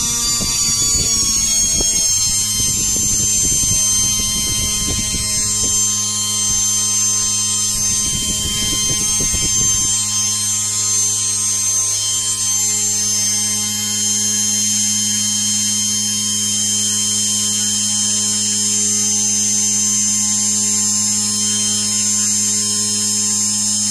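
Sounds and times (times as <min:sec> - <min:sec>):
uneven low rumbling: 0:00.0 - 0:12.9
electric motor whine and hum: 0:00.0 - 0:23.9.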